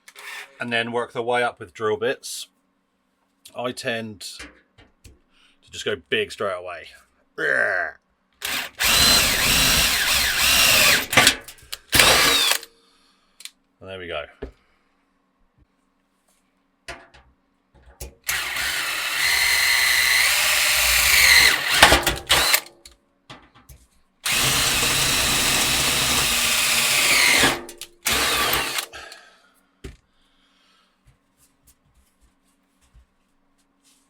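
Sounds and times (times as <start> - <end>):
power drill drilling metal: 0.1 - 0.6, 8.4 - 12.7, 18.3 - 22.7, 24.2 - 28.9.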